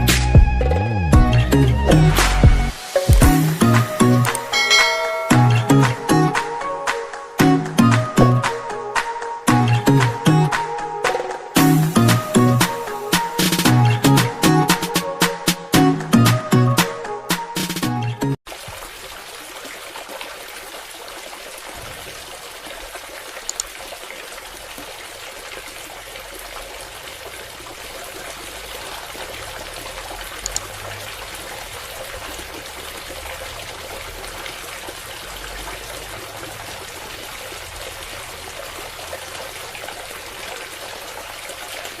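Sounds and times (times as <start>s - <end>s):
water pouring and trickling: 1.6s - 6.8s, 11.4s - 13.8s, 18.4s - 42.0s.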